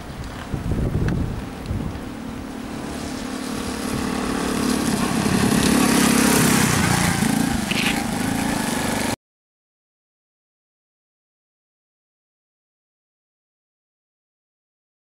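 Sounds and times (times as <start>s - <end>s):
moped engine revving: 1.2s - 9.2s.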